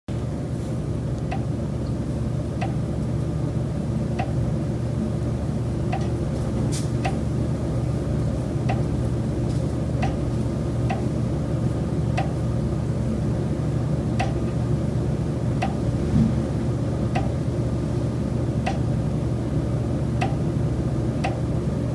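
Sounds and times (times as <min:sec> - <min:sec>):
light knocking ticks: 0:01.2 - 0:01.5, 0:04.2 - 0:04.4, 0:05.9 - 0:06.2, 0:10.0 - 0:10.2, 0:10.9 - 0:11.1, 0:12.2 - 0:12.4, 0:14.2 - 0:14.6, 0:15.6 - 0:15.8, 0:17.1 - 0:17.4, 0:18.6 - 0:18.9, 0:20.2 - 0:20.4, 0:21.2 - 0:21.4.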